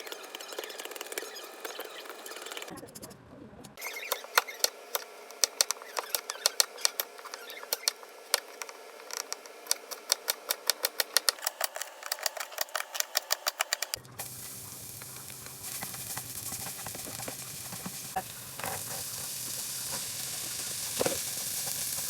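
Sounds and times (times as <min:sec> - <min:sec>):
faint steady hiss: 0:14.2 - 0:22.0.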